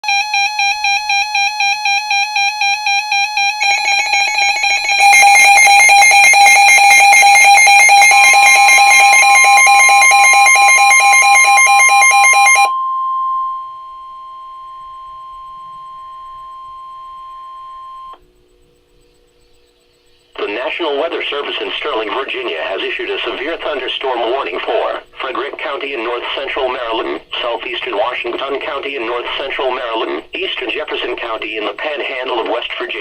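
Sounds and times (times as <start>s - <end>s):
alarm beeping rapidly: 0.0s - 18.1s
steady alarm tone: 0.0s - 18.2s.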